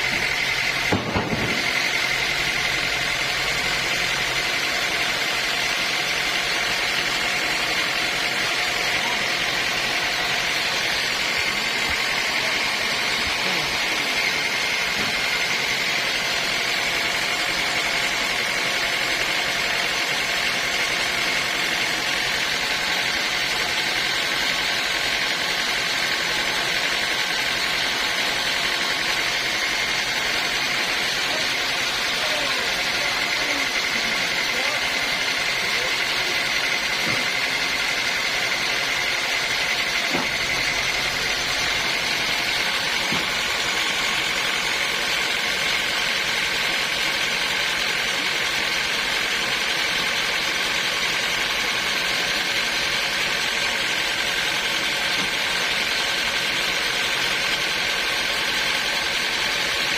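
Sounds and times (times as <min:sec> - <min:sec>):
sawmill saw whining: 0:00.0 - 0:59.9
brief knock: 0:00.9 - 0:01.6.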